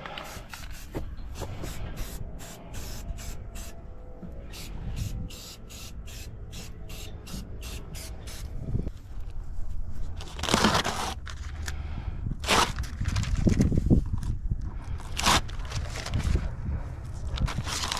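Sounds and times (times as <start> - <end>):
spray-paint can bursts: 0.1 - 3.8, 4.5 - 8.5.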